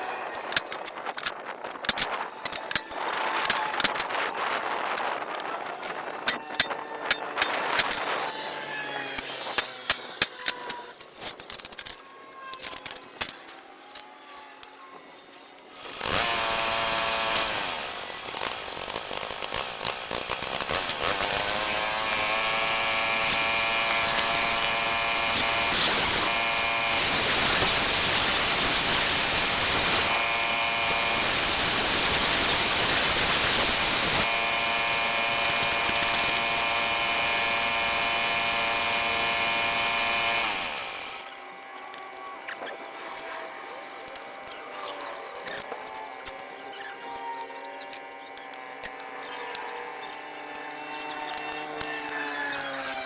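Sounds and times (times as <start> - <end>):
spindle motor whining: 12.5 - 53.0
hissing cutting noise: 15.7 - 41.4.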